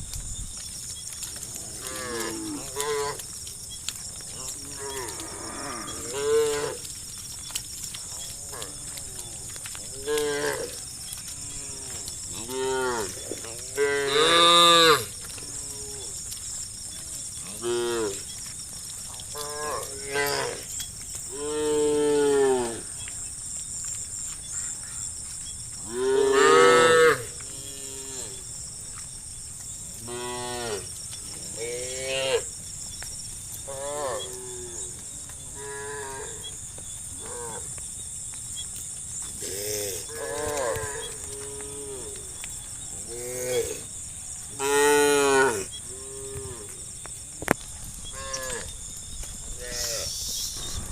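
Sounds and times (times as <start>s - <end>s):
cows mooing: 4.3s - 6.9s, 8.1s - 16.2s, 19.3s - 20.6s, 25.9s - 28.4s, 39.4s - 42.2s, 44.6s - 46.8s, 48.1s - 48.7s
steady high hiss: 49.5s - 50.9s.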